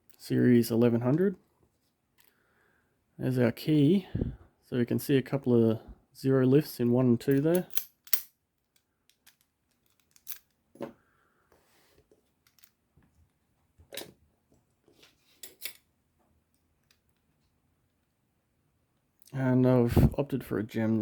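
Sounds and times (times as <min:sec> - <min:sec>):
metal lock parts clicking: 0:07.3 - 0:10.6.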